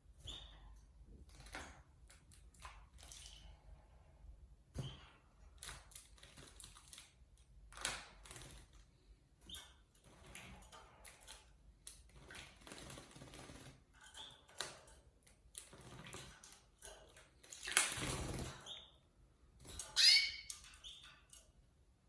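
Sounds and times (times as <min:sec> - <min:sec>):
short bird chirps: 0:20.0 - 0:20.5.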